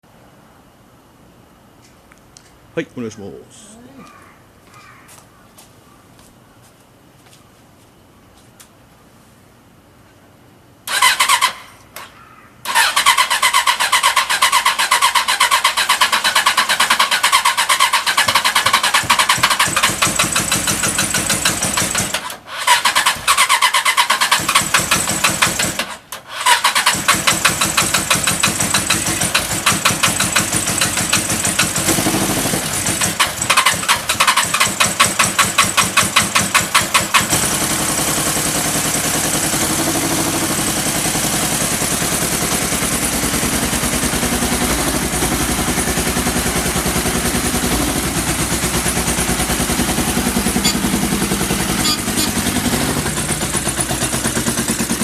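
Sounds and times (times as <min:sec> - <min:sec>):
motorcycle electric starter cranking: 0:10.9 - 0:12.1, 0:12.7 - 0:55.0
motorcycle engine running: 0:12.8 - 0:22.2, 0:26.7 - 0:55.0.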